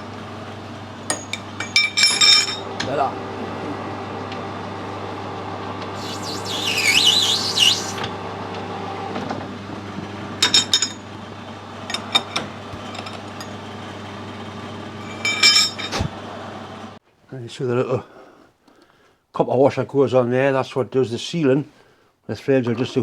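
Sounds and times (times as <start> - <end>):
workshop machine hum: 0.0 - 17.0
small metal parts clinking: 1.1 - 2.6, 10.4 - 11.1, 11.9 - 13.6, 15.0 - 16.0
metallic squeal: 6.0 - 8.0.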